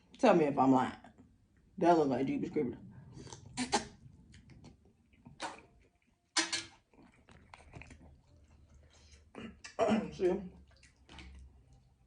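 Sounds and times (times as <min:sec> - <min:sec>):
shellfish being eaten: 0:03.1 - 0:09.8, 0:10.5 - 0:12.0.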